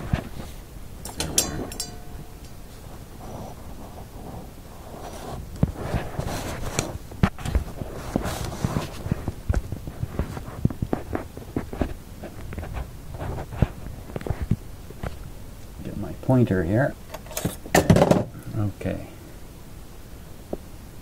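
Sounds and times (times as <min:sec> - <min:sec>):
rustling: 0:00.0 - 0:15.2.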